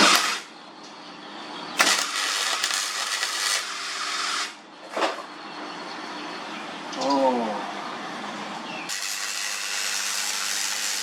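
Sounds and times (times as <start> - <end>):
welding arc crackling: 1.8 - 4.6, 8.9 - 11.0.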